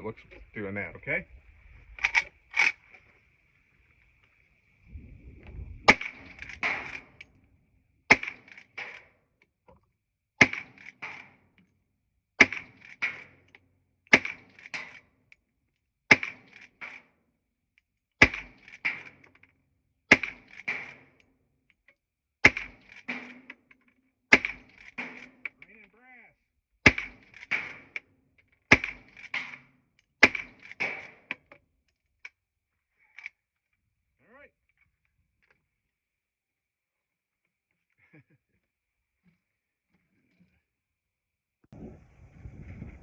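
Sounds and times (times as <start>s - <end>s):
rifle lever clacking: 1.9s - 3.0s, 5.9s - 7.3s
rifle shots: 2.0s - 2.8s, 5.8s - 7.3s, 8.1s - 9.0s, 28.7s - 29.6s, 30.2s - 31.3s.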